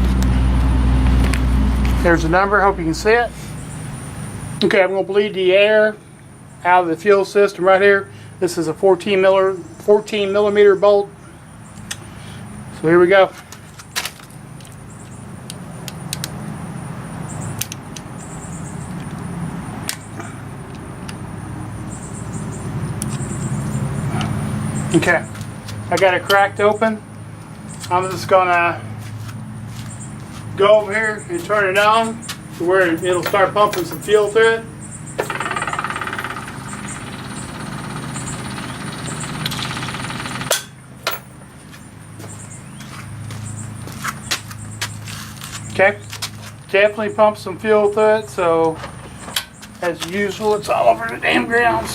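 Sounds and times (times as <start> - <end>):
steady low hum: 16.8 - 44.0
fuel pump ticking buzz: 31.9 - 41.5
wrench metallic clicks: 35.2 - 41.3.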